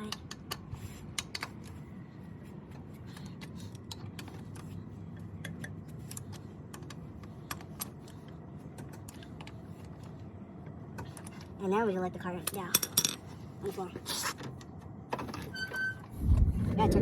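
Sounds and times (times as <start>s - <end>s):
low steady hum: 16.0s - 17.0s.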